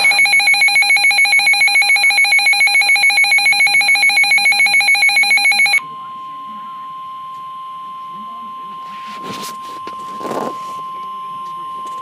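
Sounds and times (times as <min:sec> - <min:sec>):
pulsing electronic alarm tone: 0:00.0 - 0:09.0.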